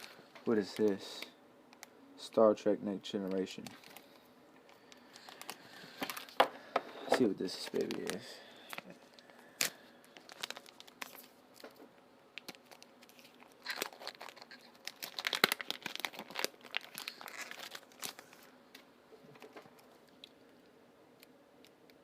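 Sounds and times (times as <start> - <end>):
packaging crinkling and tearing: 3.2 - 6.4, 7.5 - 18.5.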